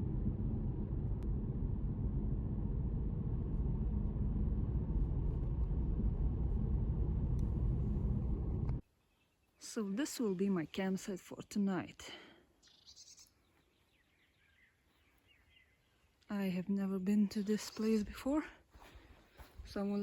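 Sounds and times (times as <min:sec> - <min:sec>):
car road and engine rumble: 0:00.0 - 0:08.8.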